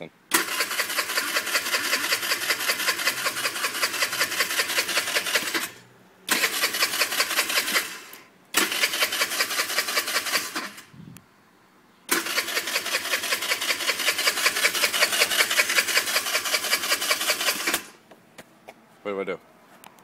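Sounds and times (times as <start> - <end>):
scooter engine cranking: 0.3 - 10.9, 12.1 - 18.0.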